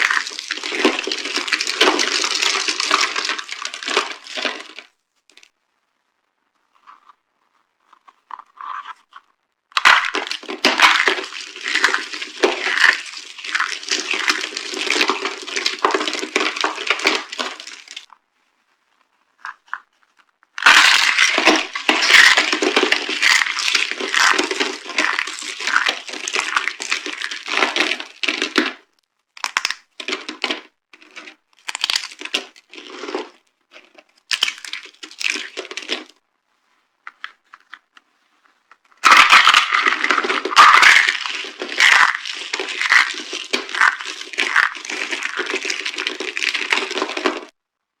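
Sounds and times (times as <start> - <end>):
cardboard boxes being crushed: 0.0 - 4.8, 9.8 - 18.1, 20.6 - 28.8, 29.6 - 33.4, 34.3 - 36.1, 39.0 - 47.5.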